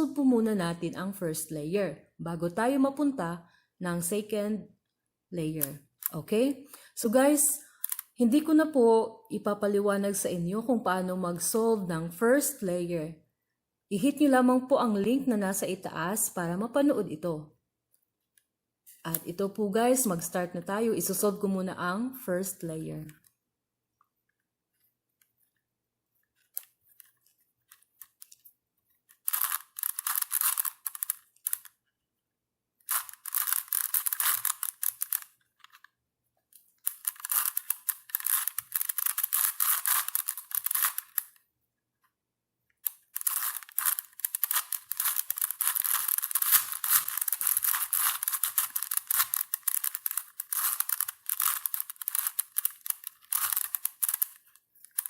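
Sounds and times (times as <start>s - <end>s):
puzzle cube pieces clicking: 7.7s - 8.2s, 29.1s - 31.8s, 32.8s - 35.9s, 36.8s - 41.4s, 42.8s - 55.0s.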